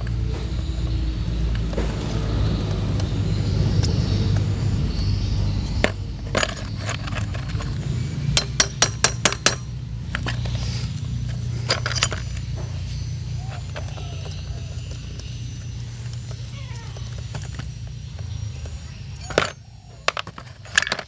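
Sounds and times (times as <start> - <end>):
steady low hum: 0.0 - 21.0
small metal parts clinking: 5.7 - 21.0.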